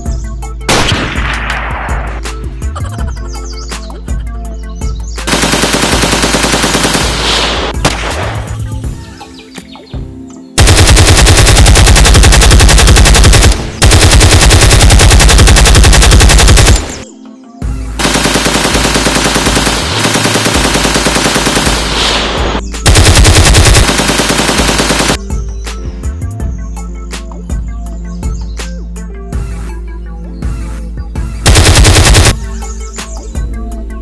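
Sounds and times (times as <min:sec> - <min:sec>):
automatic gunfire: 0:00.7 - 0:01.4, 0:05.3 - 0:08.5, 0:10.6 - 0:17.1, 0:18.0 - 0:25.2, 0:31.5 - 0:32.4.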